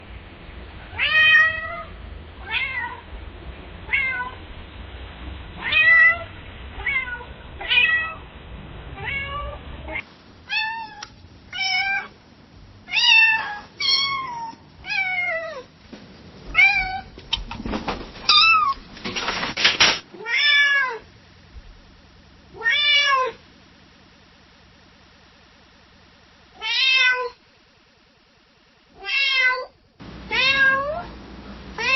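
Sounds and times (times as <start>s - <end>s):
cat meowing: 5.6s - 8.2s, 9.0s - 12.1s, 12.9s - 15.7s, 18.3s - 18.8s, 22.6s - 23.4s, 26.6s - 27.4s, 29.0s - 31.1s.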